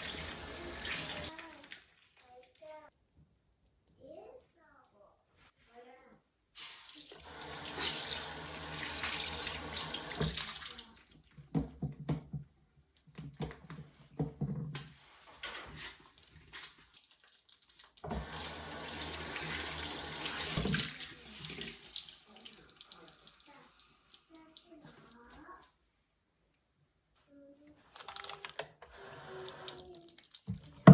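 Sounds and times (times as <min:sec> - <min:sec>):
tap water running into sink: 0:00.0 - 0:02.0, 0:06.6 - 0:12.4, 0:17.8 - 0:24.9, 0:28.0 - 0:30.9
splashing and handling noises: 0:00.0 - 0:02.9, 0:06.5 - 0:14.2, 0:14.8 - 0:25.8, 0:27.8 - 0:30.9.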